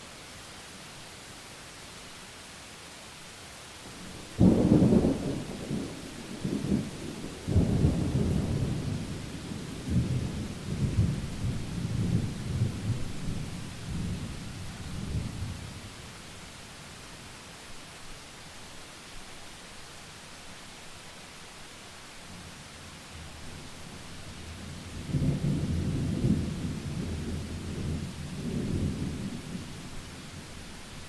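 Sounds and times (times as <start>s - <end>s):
rain hissing: 0.0s - 31.0s
rolling thunder rumble: 24.8s - 29.9s.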